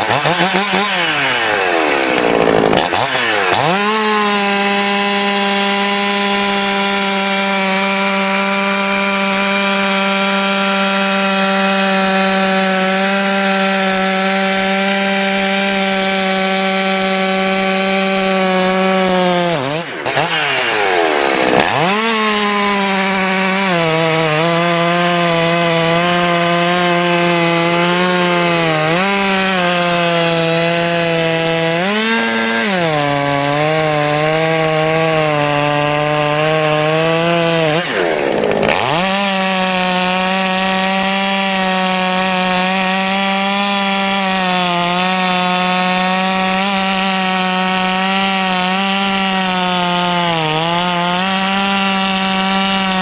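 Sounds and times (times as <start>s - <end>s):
chainsaw cutting wood at high revs: 0.0s - 53.0s.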